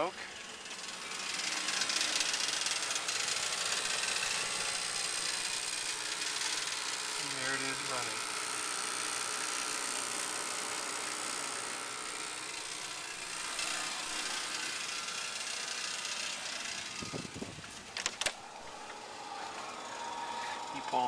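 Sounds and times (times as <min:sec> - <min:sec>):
heater hissing: 0:00.0 - 0:21.0
sharp clicks: 0:17.6 - 0:18.5.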